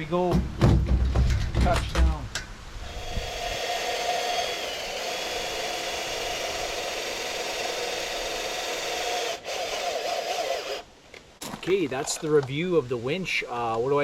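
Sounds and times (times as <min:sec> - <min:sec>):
drill driving winch with geared whine: 0:02.8 - 0:10.8.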